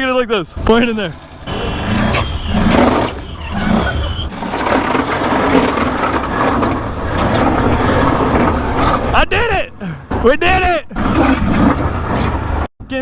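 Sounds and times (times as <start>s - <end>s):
differential gears grinding: 0.5s - 9.0s
atv engine running: 0.6s - 7.8s.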